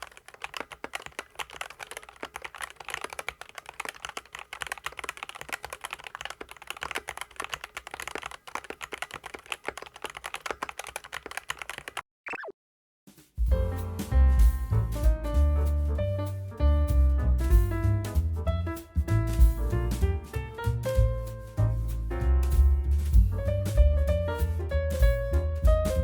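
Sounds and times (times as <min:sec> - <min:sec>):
mechanical keyboard typing: 0:00.0 - 0:12.0.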